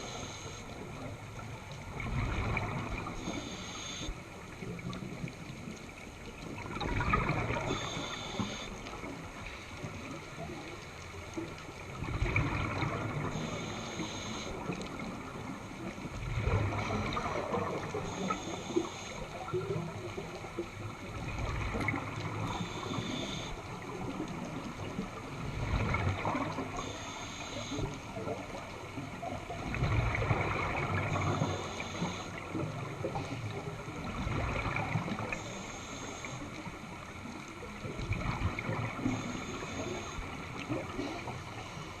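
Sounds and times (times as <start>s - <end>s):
regulator inhale hiss: 0.0s - 1.1s, 3.0s - 4.2s, 7.5s - 9.7s, 13.3s - 15.0s, 17.8s - 19.5s, 22.4s - 23.9s, 26.7s - 28.2s, 31.1s - 33.4s, 35.3s - 36.7s, 38.9s - 42.0s
exhaled bubbles rumbling: 0.9s - 3.5s, 4.6s - 8.1s, 11.4s - 13.5s, 14.6s - 18.2s, 19.3s - 26.9s, 27.9s - 35.4s, 37.0s - 41.8s.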